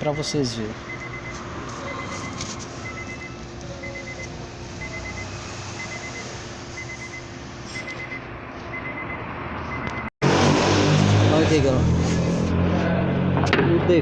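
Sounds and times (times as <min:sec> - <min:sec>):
car warning chime beeps: 0:00.0 - 0:10.1.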